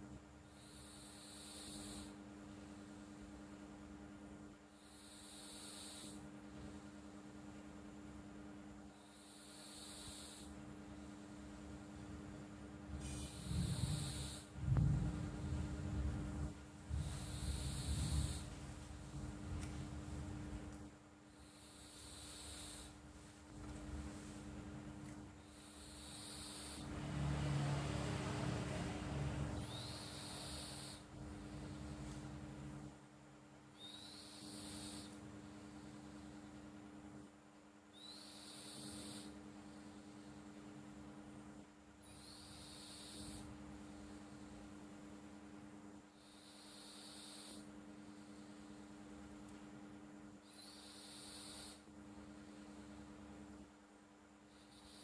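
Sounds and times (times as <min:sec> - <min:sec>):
steady low hum: 0:00.0 - 0:55.0
cat snoring: 0:00.4 - 0:03.4, 0:04.7 - 0:07.0, 0:08.9 - 0:12.0, 0:13.0 - 0:19.5, 0:21.3 - 0:23.0, 0:25.4 - 0:32.2, 0:33.7 - 0:36.5, 0:37.9 - 0:40.6, 0:42.0 - 0:44.5, 0:46.1 - 0:48.9, 0:50.4 - 0:52.9, 0:54.5 - 0:55.0.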